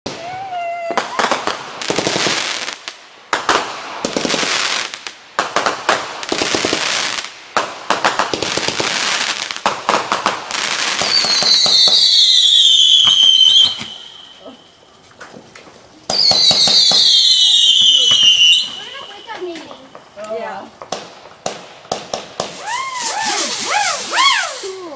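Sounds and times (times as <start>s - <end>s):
fireworks and firecrackers crackling: 0.1s - 24.9s
high whistle sliding down: 22.6s - 24.9s.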